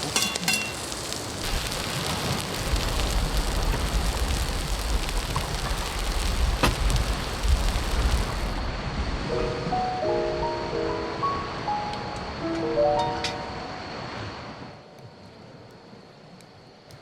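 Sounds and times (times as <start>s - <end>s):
meat sizzling on a grill: 0.0s - 8.7s
low rumble: 1.4s - 9.3s.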